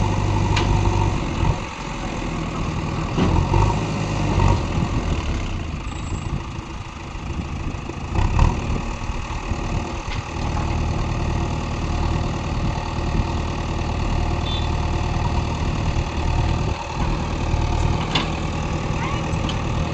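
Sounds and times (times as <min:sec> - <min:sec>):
diesel engine running at low revs: 0:00.0 - 0:19.9
metal clank: 0:18.0 - 0:18.4.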